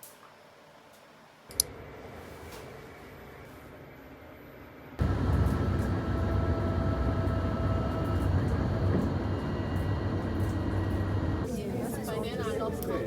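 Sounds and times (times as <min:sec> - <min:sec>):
vehicle engine rumbling: 0:05.0 - 0:11.5.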